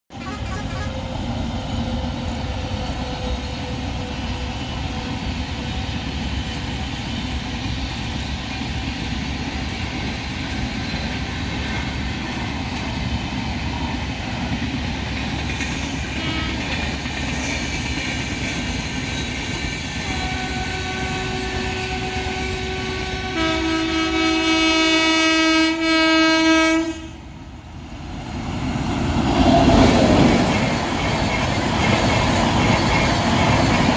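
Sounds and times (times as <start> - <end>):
locomotive horn long blast: 0.1 - 1.1, 16.1 - 16.8, 20.0 - 27.2
train rumbling in motion: 0.1 - 33.9.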